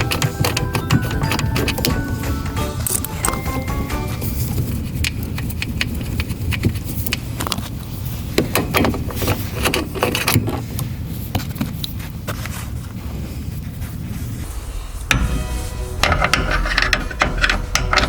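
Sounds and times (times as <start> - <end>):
hand tools and metal parts clinking: 0.0 - 7.2, 16.0 - 18.0
steady low rumble: 12.2 - 18.0.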